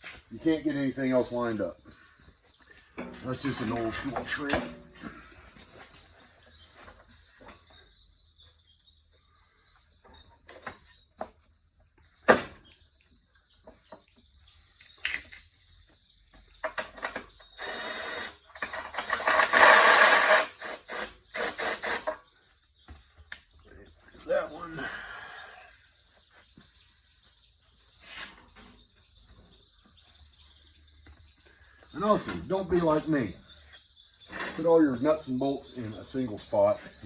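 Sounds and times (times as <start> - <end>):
dense rattling tool noise: 2.9 - 5.4, 17.0 - 22.2.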